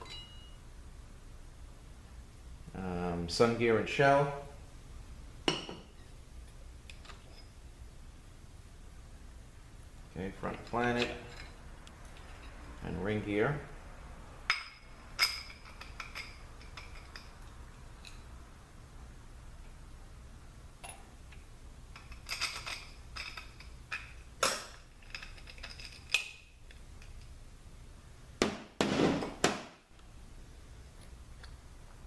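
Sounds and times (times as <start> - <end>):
metal parts clinking and knocking: 14.5 - 17.3, 21.9 - 27.3
metal parts rattling: 22.0 - 27.3.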